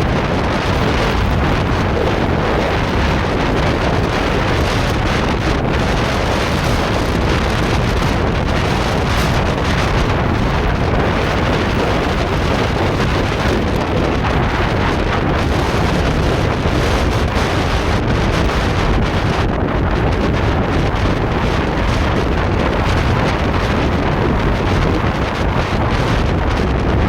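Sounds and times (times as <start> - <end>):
plastic sheet flapping: 0.0 - 19.3
wind buffeting microphone: 0.0 - 27.0.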